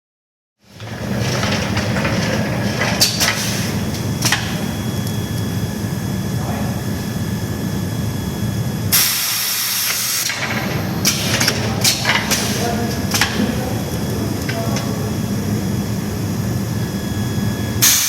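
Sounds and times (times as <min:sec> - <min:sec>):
welding machine humming: 0:00.7 - 0:18.0
loud hiss: 0:17.8 - 0:18.0.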